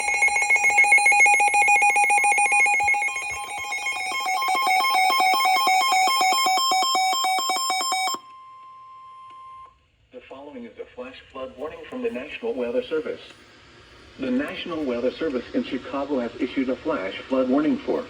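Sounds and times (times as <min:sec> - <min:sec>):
pulsing two-pitch alarm tone: 0:00.0 - 0:09.6
faint steady beep tone: 0:00.0 - 0:09.8.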